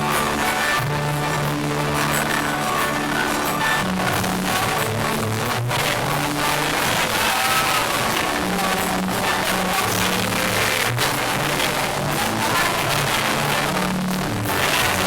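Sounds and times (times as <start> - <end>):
band music: 0.0 - 15.0
bass line: 0.0 - 15.0.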